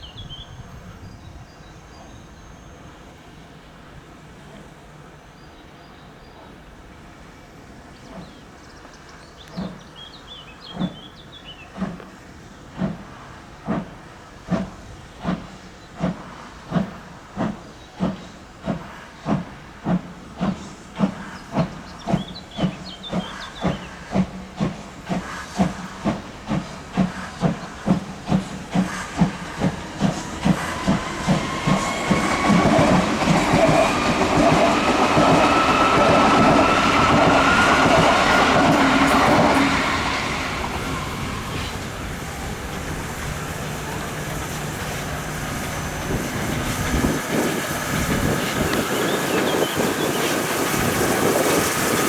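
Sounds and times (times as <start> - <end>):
steam locomotive chuffing: 6.1 - 52.0.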